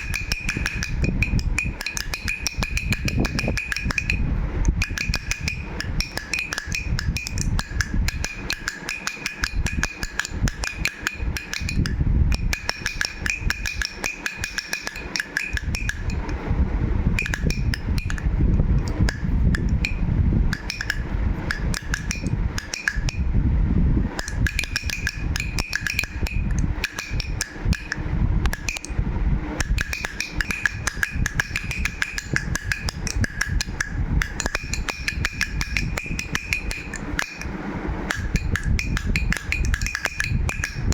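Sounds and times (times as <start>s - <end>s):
baby rattle clattering: 4.8s - 16.3s, 29.6s - 37.4s, 38.1s - 40.9s
low rumble: 15.6s - 40.9s.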